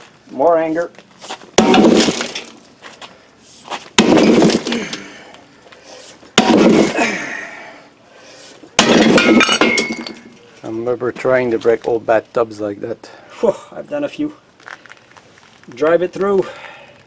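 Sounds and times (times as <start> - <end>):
sledgehammer striking metal: 1.6 - 2.6, 4.0 - 5.2, 6.4 - 7.0, 8.8 - 10.3.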